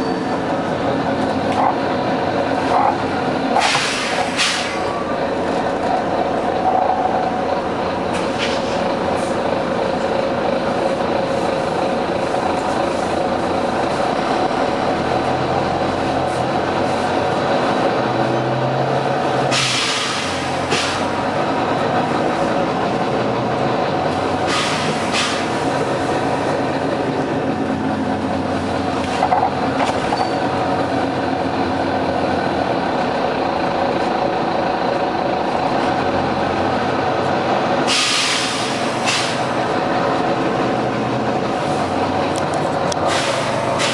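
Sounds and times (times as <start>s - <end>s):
diesel bus engine running: 0.0s - 43.9s
compressed air hiss: 3.6s - 4.8s, 24.5s - 25.6s, 37.9s - 39.5s, 43.1s - 43.9s.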